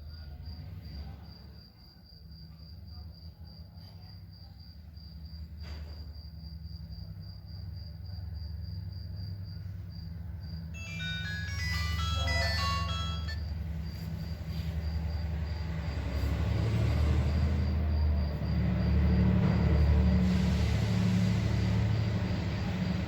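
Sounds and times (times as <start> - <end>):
low engine hum: 8.1 - 23.0
electronic jingle: 10.8 - 13.5.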